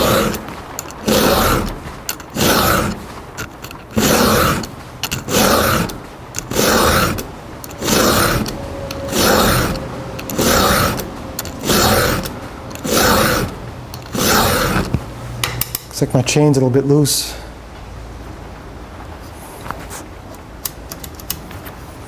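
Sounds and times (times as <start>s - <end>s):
file rasping on chain tooth: 0.0s - 15.1s.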